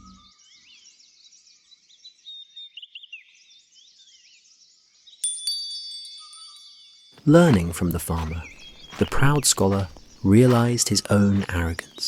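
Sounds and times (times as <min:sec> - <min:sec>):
birds chirping: 0:06.2 - 0:12.0.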